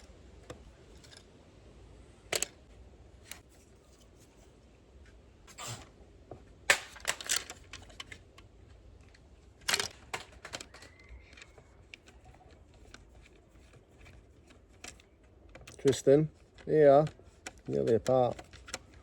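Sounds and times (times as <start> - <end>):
light plastic clicks: 7.1 - 19.0.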